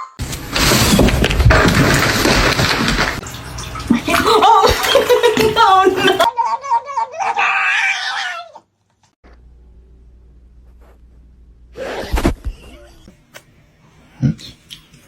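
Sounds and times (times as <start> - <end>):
cat yowling: 6.7 - 8.7
faint low hum: 9.3 - 11.8.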